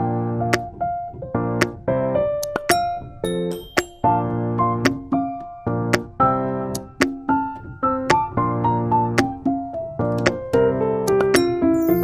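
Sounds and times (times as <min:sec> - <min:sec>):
keyboard chords: 0:00.0 - 0:12.0
sharp percussive hit: 0:03.5 - 0:04.2.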